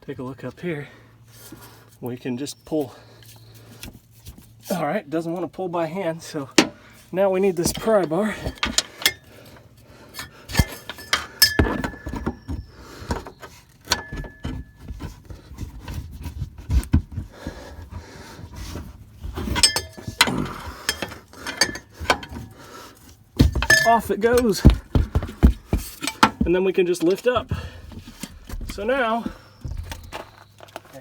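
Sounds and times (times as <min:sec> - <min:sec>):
sharp metal knocks ringing: 0:10.5 - 0:12.7, 0:19.6 - 0:22.4, 0:23.4 - 0:26.6
pry bar knocking on metal: 0:23.4 - 0:26.5.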